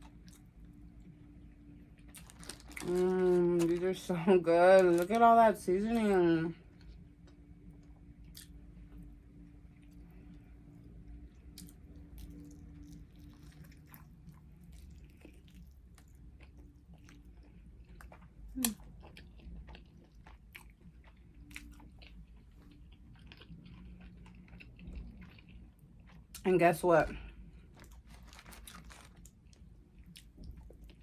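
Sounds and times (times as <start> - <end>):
small crunches: 2.0 - 4.1, 27.5 - 31.0
chewing and biting food: 11.4 - 26.4, 27.5 - 31.0.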